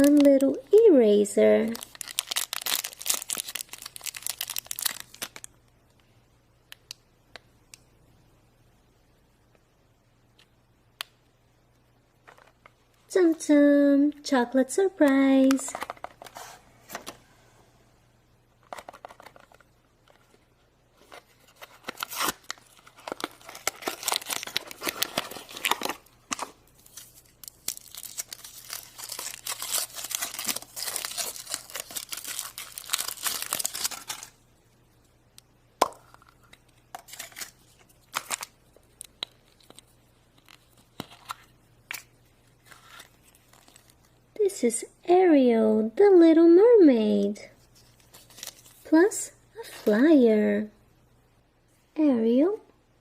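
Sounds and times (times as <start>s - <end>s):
foil wrapper crinkling and tearing: 1.7s - 5.5s, 21.4s - 34.4s, 36.9s - 44.2s, 47.9s - 48.9s.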